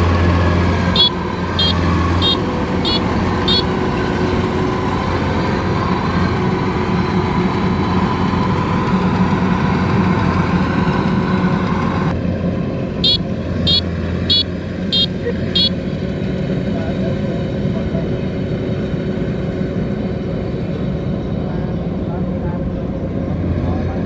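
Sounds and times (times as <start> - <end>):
combine harvester engine humming: 0.0 - 24.0
high ticking: 0.8 - 9.8.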